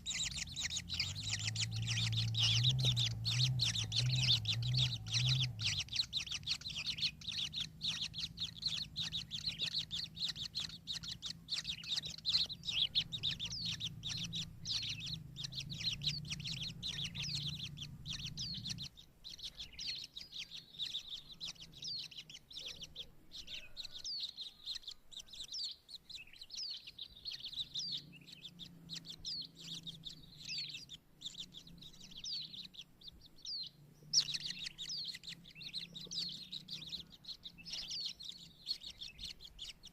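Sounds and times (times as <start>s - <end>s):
low steady hum: 0.0s - 19.8s
kingfishers chirping: 0.0s - 39.9s.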